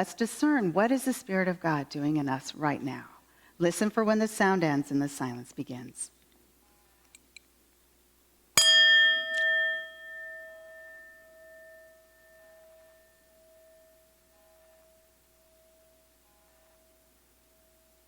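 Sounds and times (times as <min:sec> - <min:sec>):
singing bowl ringing: 0:08.6 - 0:18.0.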